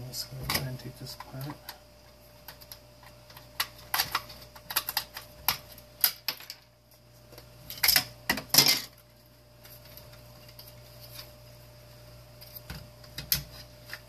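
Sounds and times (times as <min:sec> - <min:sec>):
plastic cracking and clatter: 0:02.5 - 0:06.7.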